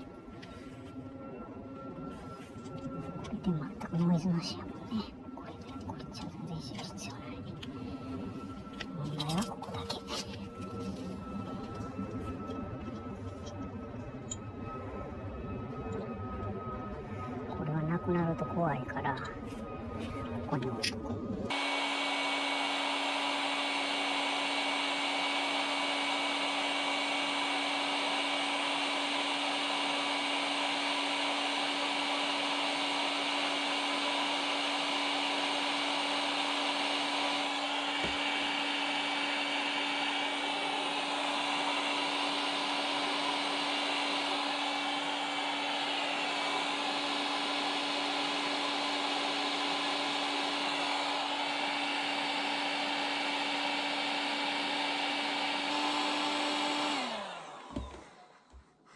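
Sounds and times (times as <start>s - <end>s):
hot-air blower whooshing: 21.5s - 58.5s.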